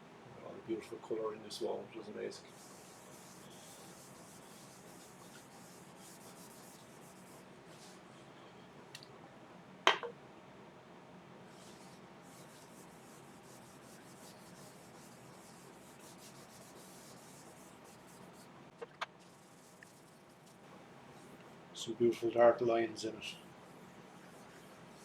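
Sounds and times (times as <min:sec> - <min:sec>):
paper towel rubbing wood: 0:02.4 - 0:08.1, 0:11.5 - 0:18.5, 0:19.2 - 0:21.4, 0:23.2 - 0:25.0.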